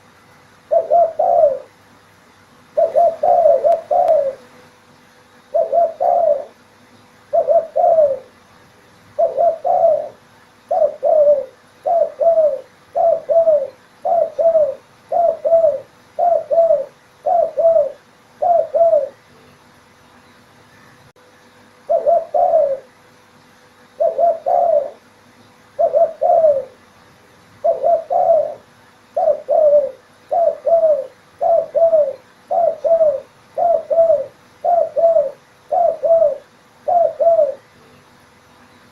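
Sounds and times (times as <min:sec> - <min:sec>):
faint steady hum: 0:00.0 - 0:38.9
dove cooing: 0:00.7 - 0:01.8, 0:02.7 - 0:04.5, 0:05.5 - 0:06.6, 0:07.3 - 0:08.4, 0:09.1 - 0:19.3, 0:21.9 - 0:23.0, 0:24.0 - 0:25.1, 0:25.7 - 0:26.9, 0:27.6 - 0:37.8.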